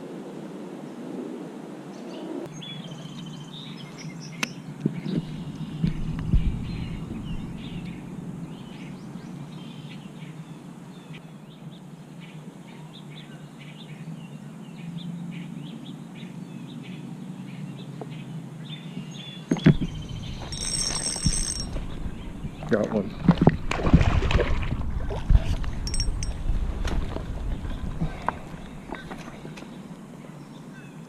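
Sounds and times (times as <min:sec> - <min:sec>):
small birds chirping: 0:02.2 - 0:23.2
low background rumble: 0:04.9 - 0:11.0, 0:19.0 - 0:30.6.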